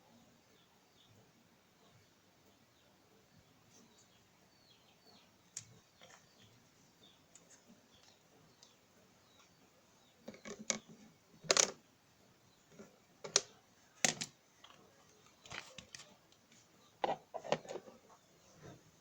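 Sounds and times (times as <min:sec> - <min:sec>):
small hard parts clicking: 0:10.2 - 0:11.8, 0:12.7 - 0:17.8.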